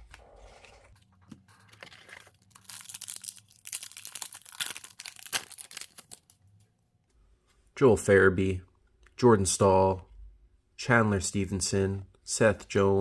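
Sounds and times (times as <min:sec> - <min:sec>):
foil wrapper crinkling and tearing: 0:01.7 - 0:06.4.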